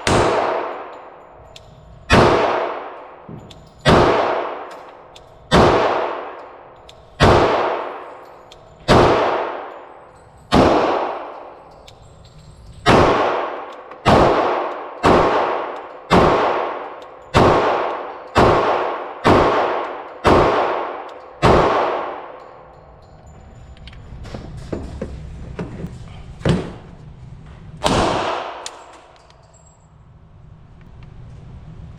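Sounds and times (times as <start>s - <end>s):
pistol shots echoing: 0.0s - 1.3s, 2.1s - 12.0s, 12.8s - 22.8s, 27.8s - 29.3s.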